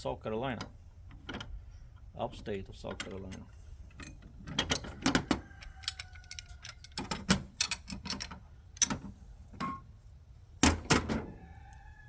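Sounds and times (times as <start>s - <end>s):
metal parts clinking and rattling: 2.8s - 9.9s.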